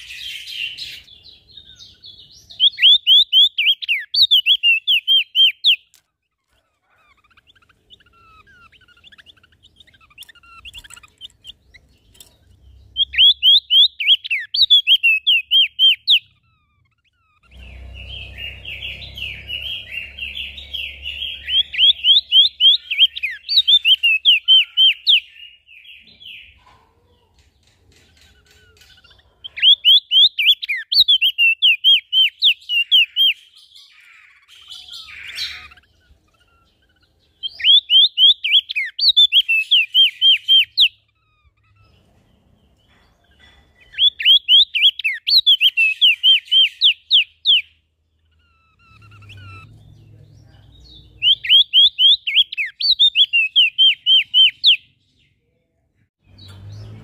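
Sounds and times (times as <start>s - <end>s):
dense chatter of bird calls: 0.0s - 57.0s
small songbirds singing: 0.0s - 57.0s.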